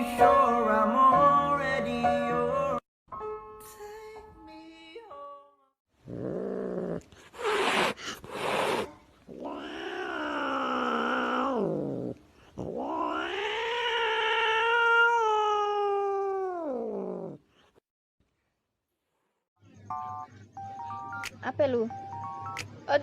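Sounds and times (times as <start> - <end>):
cat yowling: 7.4 - 17.4.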